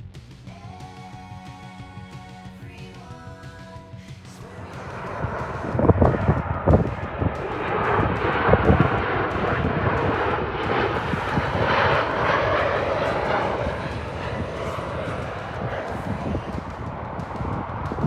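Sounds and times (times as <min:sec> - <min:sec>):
jet airliner engines: 0:04.0 - 0:18.0.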